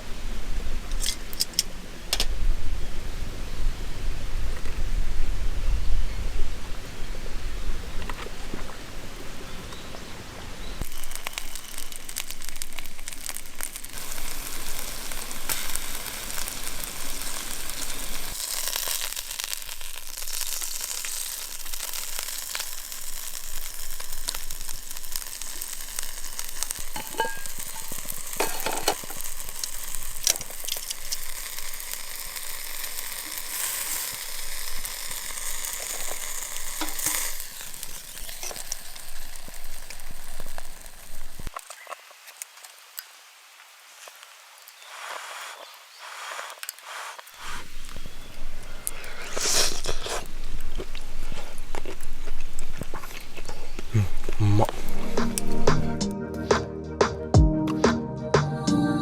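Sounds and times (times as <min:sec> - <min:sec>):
food sizzling on a grill plate: 0:10.8 - 0:41.5.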